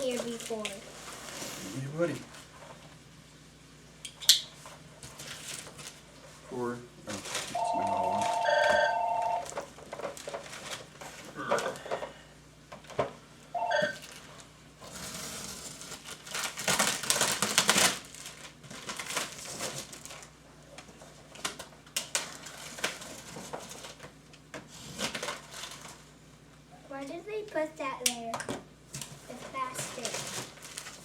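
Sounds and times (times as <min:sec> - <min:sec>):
plastic and cardboard rustling: 0:00.0 - 0:02.8, 0:04.6 - 0:12.0, 0:13.9 - 0:26.1, 0:28.9 - 0:31.0.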